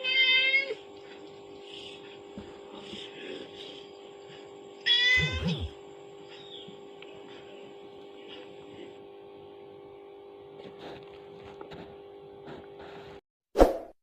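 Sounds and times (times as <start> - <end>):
cat meowing: 0.0 - 0.8, 4.8 - 5.7
faint steady hum: 0.0 - 13.2.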